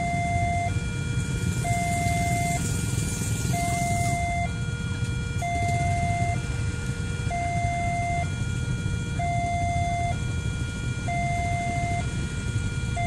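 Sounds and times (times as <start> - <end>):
low vehicle rumble: 0.0 - 9.7
two-tone hi-lo siren: 0.0 - 13.0.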